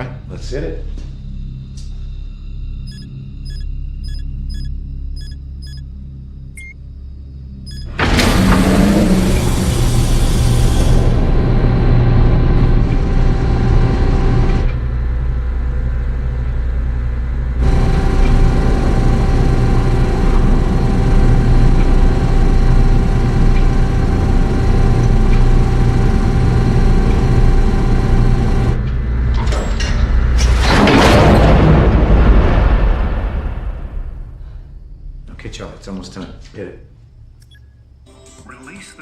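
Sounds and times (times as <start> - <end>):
motorized security shutters rumbling: 7.7 - 14.8, 17.6 - 31.2
loud noisy burst: 8.0 - 12.7, 17.6 - 28.8.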